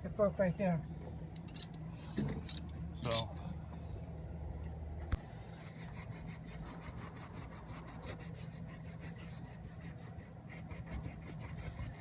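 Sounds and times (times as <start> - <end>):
steady low hum: 0.0 - 12.0
quick rubbing strokes: 5.3 - 12.0.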